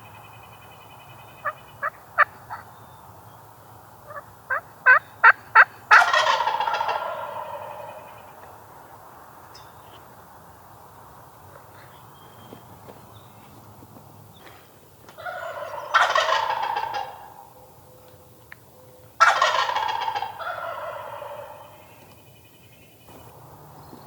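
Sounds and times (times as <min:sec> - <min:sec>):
turkeys gobbling: 0:01.3 - 0:02.7, 0:04.0 - 0:08.4, 0:15.2 - 0:17.8, 0:19.2 - 0:22.0.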